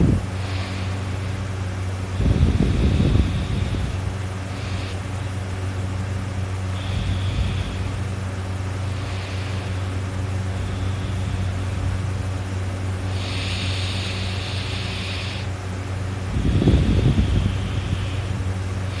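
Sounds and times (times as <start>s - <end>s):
sleeping person breathing: 0.0s - 1.5s, 2.1s - 5.4s, 6.6s - 15.6s, 16.2s - 19.0s
steady low hum: 0.0s - 19.0s
loud low snore: 13.1s - 15.5s, 16.3s - 19.0s.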